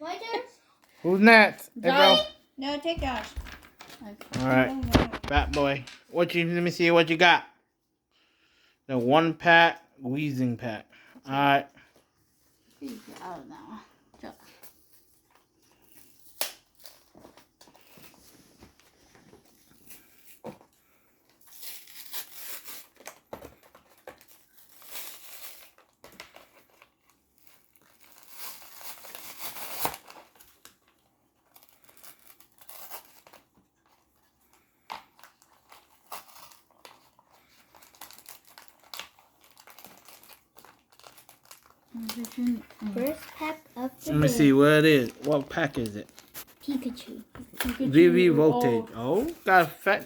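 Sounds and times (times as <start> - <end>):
foil wrapper crinkling and tearing: 3.8 - 5.4, 21.3 - 46.9.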